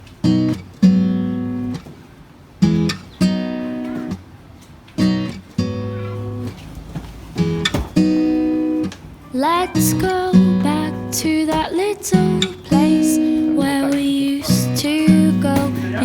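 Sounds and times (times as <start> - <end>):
acoustic guitar strumming chords: 0.0 - 1.8, 2.6 - 4.3, 5.0 - 6.6, 7.2 - 16.0.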